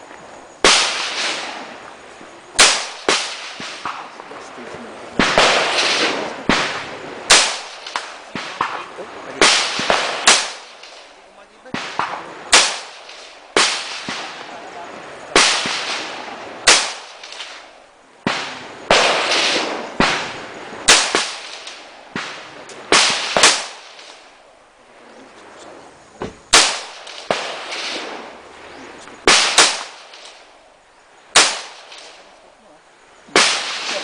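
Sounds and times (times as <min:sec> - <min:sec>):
rifle shots with echo: 0:00.6 - 0:01.7, 0:02.6 - 0:04.2, 0:05.2 - 0:14.7, 0:15.3 - 0:24.3, 0:26.5 - 0:28.4, 0:29.3 - 0:30.5, 0:31.3 - 0:32.3, 0:33.3 - 0:34.0.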